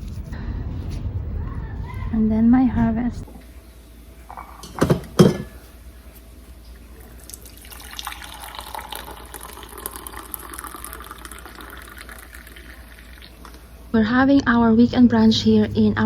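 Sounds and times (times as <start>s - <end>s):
sharp knocks: 4.6s - 5.6s
water running from tap: 7.2s - 13.7s.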